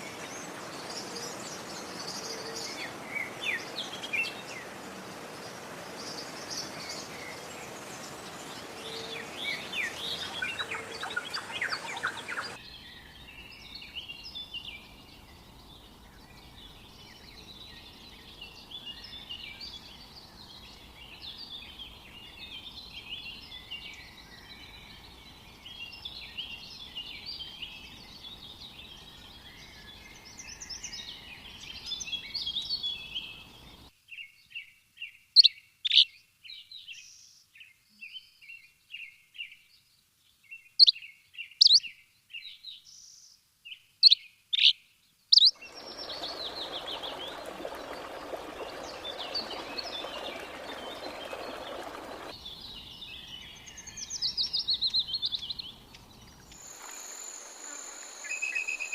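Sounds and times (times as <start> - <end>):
steady background hiss: 0.0 - 12.6, 56.2 - 58.9
birds chirping and singing: 6.0 - 14.5, 45.4 - 58.9
bird whistles: 56.5 - 58.9.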